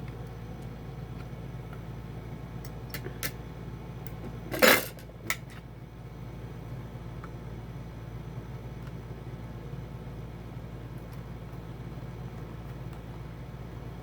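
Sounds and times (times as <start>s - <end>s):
low steady hum: 0.0s - 14.0s
metal parts clattering: 4.5s - 5.0s.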